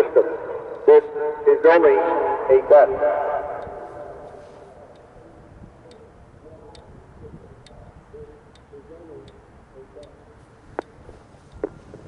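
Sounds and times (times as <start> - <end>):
faint ticks: 10.0 - 12.0.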